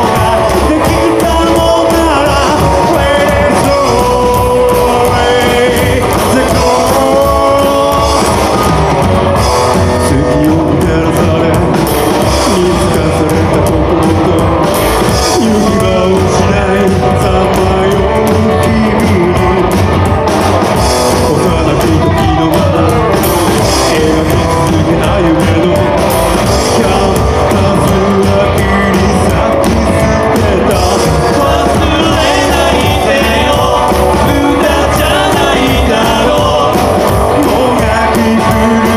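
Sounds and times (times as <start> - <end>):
electric guitar: 0.0 - 38.9
person singing: 0.0 - 38.9
steady drum beat: 0.0 - 38.9.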